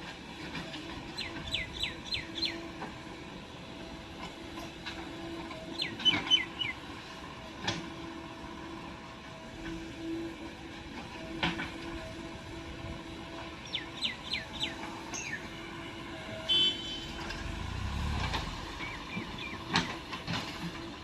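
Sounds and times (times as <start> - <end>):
diesel engine running: 0.0 - 21.0
bird chirping: 13.7 - 15.4.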